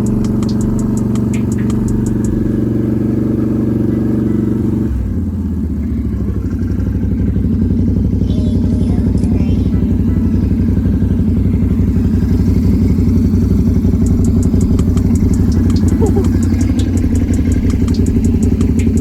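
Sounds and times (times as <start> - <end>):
fast light ticking: 0.0 - 2.7, 8.6 - 19.0
atv engine running: 0.0 - 19.0.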